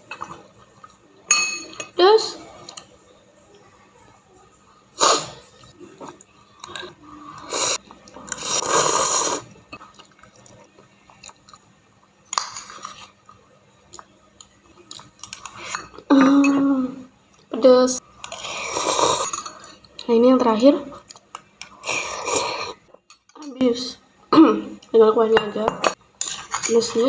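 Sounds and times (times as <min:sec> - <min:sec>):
person chewing noodles: 0:05.0 - 0:11.6, 0:18.2 - 0:20.0, 0:21.0 - 0:22.9.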